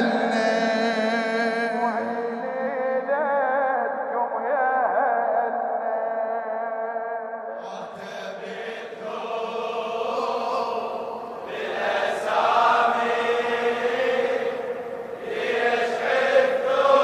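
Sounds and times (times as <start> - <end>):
chorus of voices chanting: 7.6 - 17.0.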